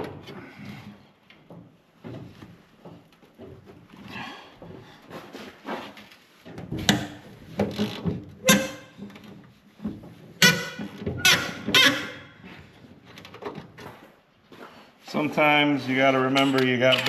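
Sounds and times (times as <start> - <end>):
metal hand tools clanking: 16.2 - 17.0.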